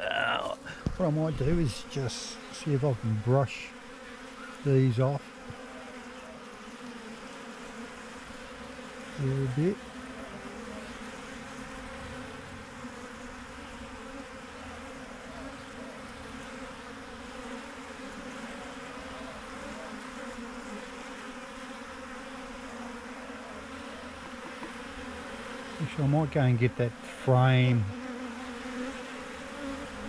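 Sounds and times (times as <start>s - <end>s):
bees buzzing: 0.0s - 30.0s.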